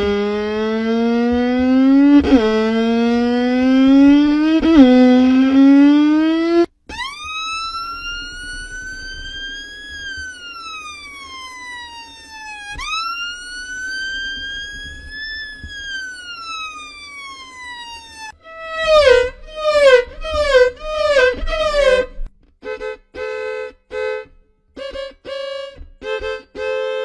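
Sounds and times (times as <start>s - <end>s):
violin glissandi: 18.5s - 22.3s.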